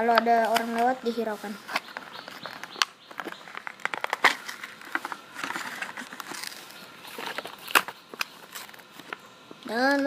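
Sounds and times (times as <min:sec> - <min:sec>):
plastic packaging crackling: 0:01.6 - 0:09.2.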